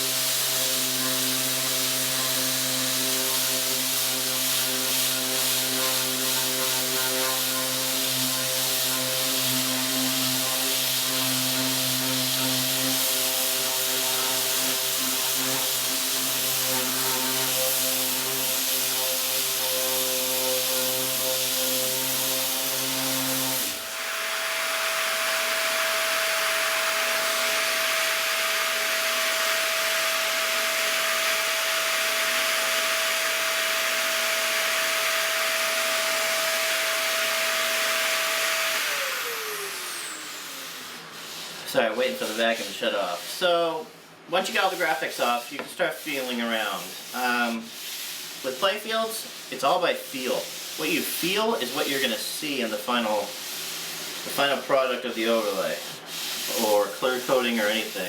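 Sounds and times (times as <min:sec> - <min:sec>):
electric sander on wood: 0:00.0 - 0:43.3, 0:44.5 - 0:58.0
vacuum whine and hiss: 0:00.0 - 0:43.9.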